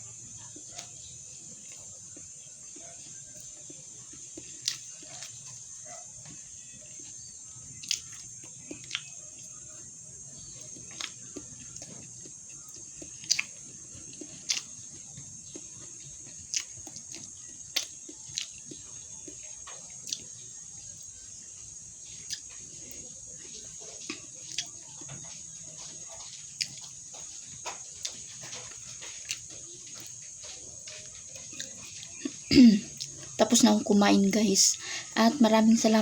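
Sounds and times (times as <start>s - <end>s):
faint chewing: 0.0s - 36.0s.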